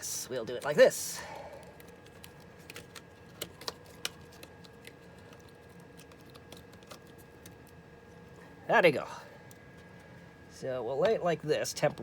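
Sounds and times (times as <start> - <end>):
faint steady hum: 0.0 - 12.0
plastic parts clicking and tapping: 1.8 - 7.6.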